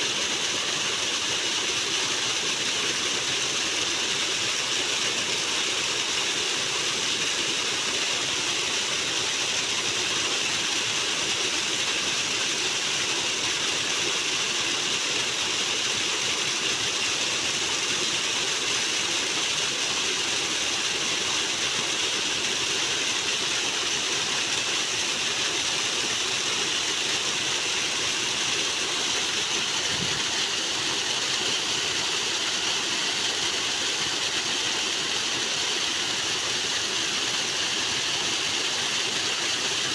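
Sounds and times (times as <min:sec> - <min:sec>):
rushing water: 0:15.3 - 0:39.9.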